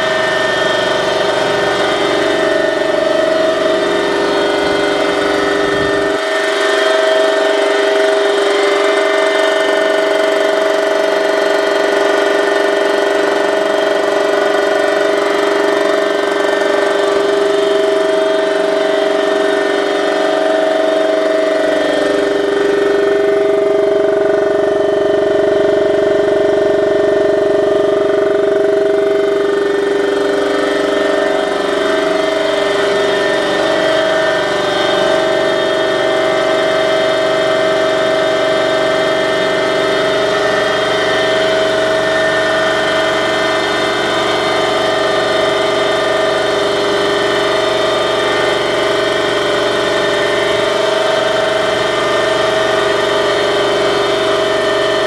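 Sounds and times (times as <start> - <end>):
deep low hum: 0.0 - 9.0, 17.3 - 38.2
compressor droning whine: 0.0 - 55.0.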